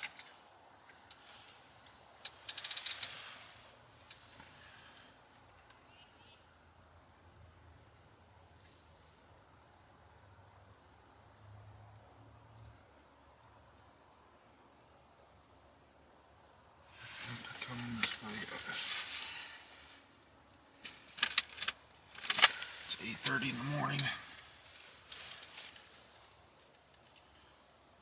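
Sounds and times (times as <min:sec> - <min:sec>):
rattle of clicks: 0:02.2 - 0:03.2, 0:20.8 - 0:22.8
small birds chirping: 0:03.0 - 0:11.7.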